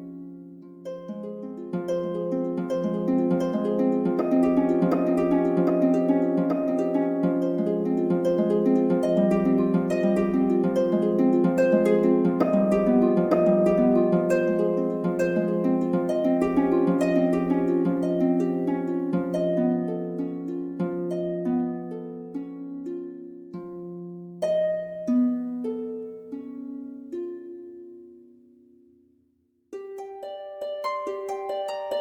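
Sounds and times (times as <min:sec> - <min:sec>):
short plucked notes: 0:02.7 - 0:19.7.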